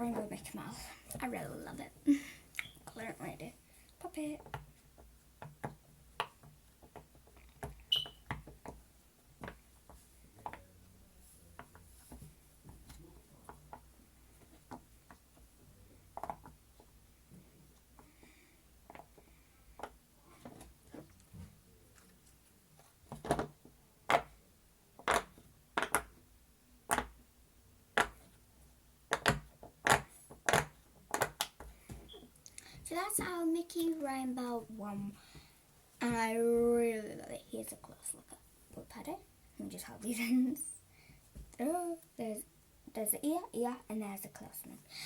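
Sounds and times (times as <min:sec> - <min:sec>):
pop-it toy bubbles popping: 0:25.0 - 0:26.1, 0:29.1 - 0:31.5.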